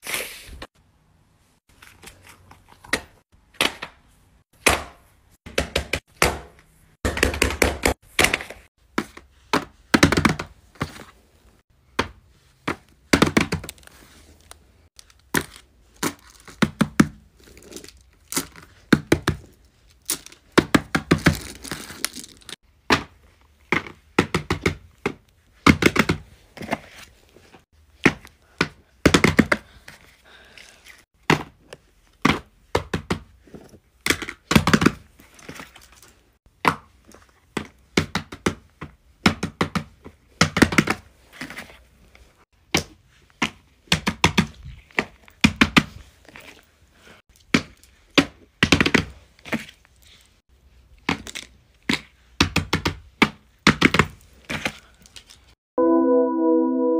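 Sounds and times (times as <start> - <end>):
crinkling: 21.2 - 22.6.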